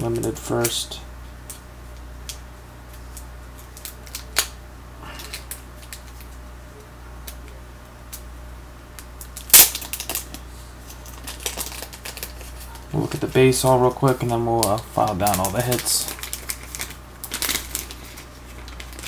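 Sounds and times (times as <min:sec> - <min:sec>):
card box packaging crackling: 0:09.3 - 0:19.0.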